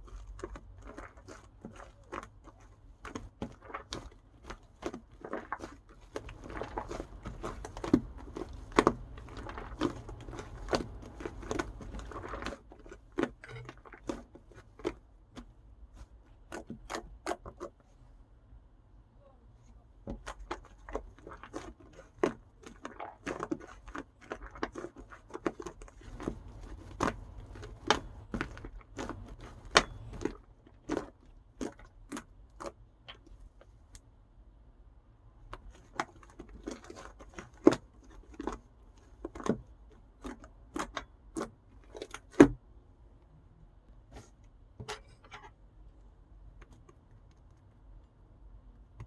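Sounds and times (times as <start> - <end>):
crinkly rustling: 0.0 - 18.0, 20.1 - 33.8, 35.5 - 42.3.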